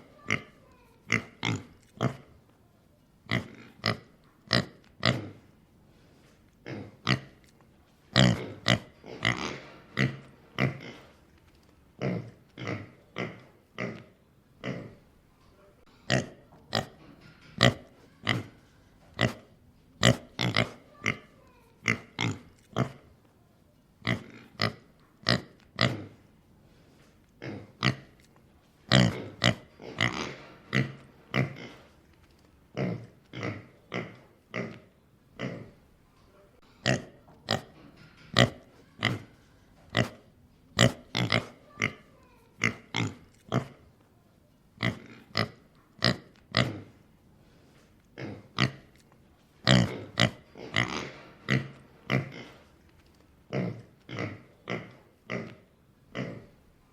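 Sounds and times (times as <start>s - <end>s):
pig grunting: 0.0s - 2.3s, 8.1s - 11.2s, 19.2s - 23.1s, 28.9s - 32.0s, 32.7s - 35.8s, 40.8s - 43.8s, 48.2s - 49.0s, 49.6s - 52.7s, 53.5s - 56.6s.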